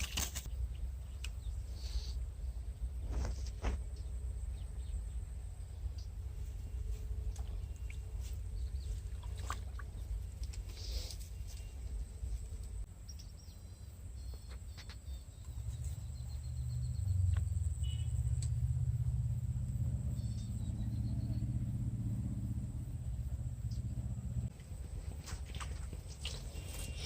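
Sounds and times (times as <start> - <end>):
bird chirps: 13.0 - 18.4, 20.0 - 21.7
low rumble: 15.3 - 27.0.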